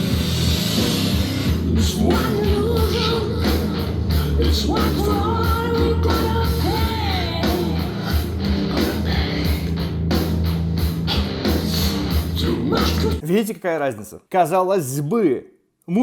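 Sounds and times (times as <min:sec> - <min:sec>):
heavy rock song with vocal: 0:00.0 - 0:09.9, 0:10.8 - 0:13.2.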